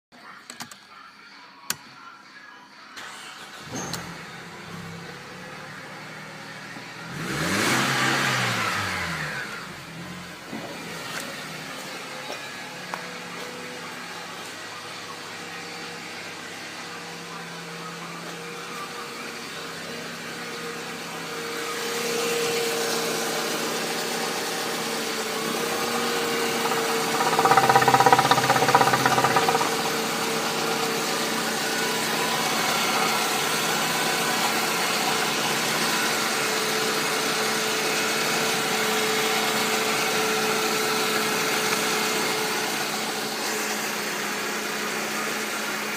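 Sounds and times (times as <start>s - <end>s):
car engine revving: 7.0s - 9.6s, 25.2s - 32.4s.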